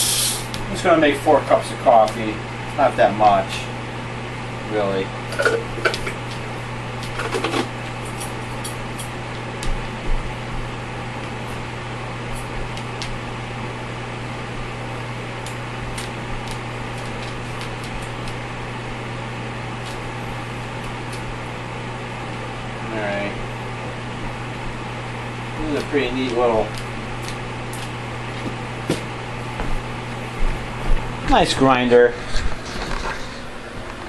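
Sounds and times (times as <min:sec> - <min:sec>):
coffee grinder motor hum: 0:00.0 - 0:00.8, 0:05.2 - 0:23.4.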